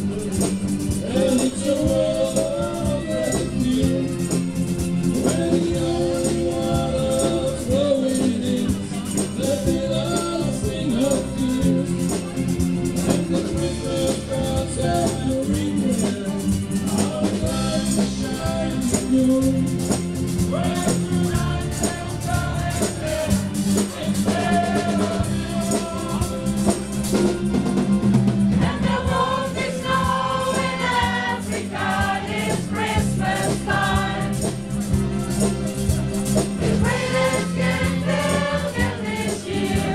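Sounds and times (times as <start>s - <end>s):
hand percussion beat: 0.0s - 39.9s
choir singing: 5.1s - 8.4s, 20.6s - 27.3s, 28.6s - 34.6s, 36.6s - 39.9s.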